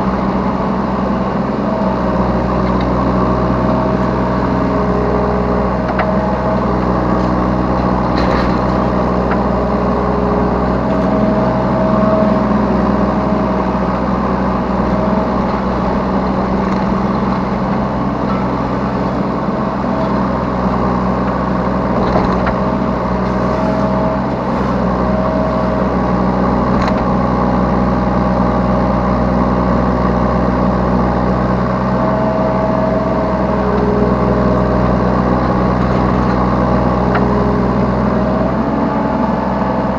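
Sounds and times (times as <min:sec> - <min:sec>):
diesel engine running under load: 0:00.0 - 0:39.9.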